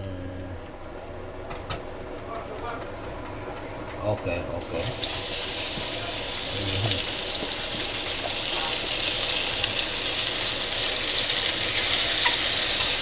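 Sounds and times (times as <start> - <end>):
water running from tap: 4.6 - 13.0.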